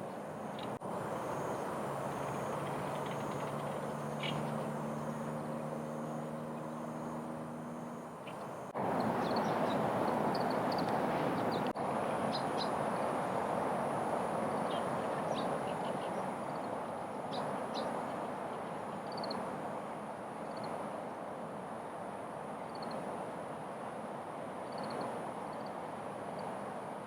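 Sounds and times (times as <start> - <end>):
birds chirping: 2.1 - 12.7, 14.7 - 18.4.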